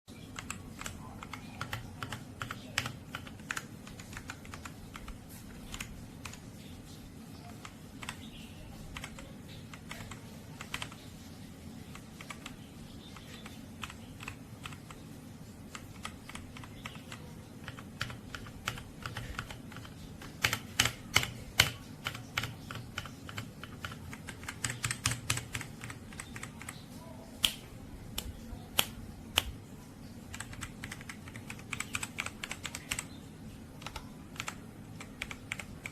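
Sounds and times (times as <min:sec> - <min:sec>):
low steady hum: 0:00.1 - 0:35.9.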